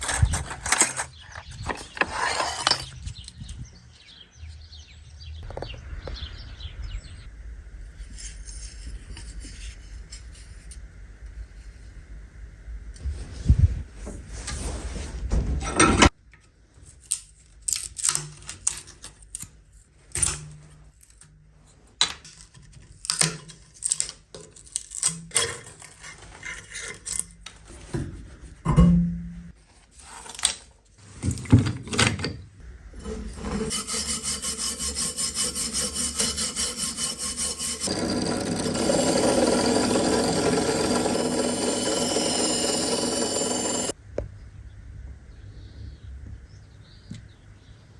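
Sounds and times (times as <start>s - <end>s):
scraping metal blade: 0.0s - 3.3s, 33.0s - 44.0s
fast rasping rub: 33.0s - 43.9s.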